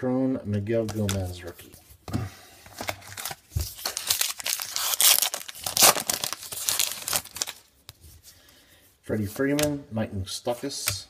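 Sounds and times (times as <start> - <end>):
foil wrapper tearing and crinkling: 2.8 - 7.7.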